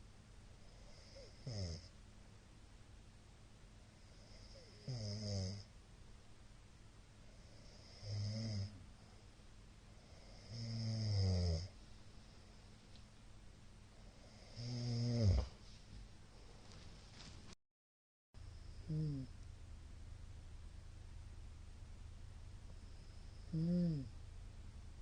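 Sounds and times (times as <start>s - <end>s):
man snoring: 0.6s - 1.9s, 4.1s - 5.7s, 7.4s - 8.8s, 10.0s - 11.7s, 14.2s - 15.5s, 18.7s - 19.3s, 23.0s - 24.1s.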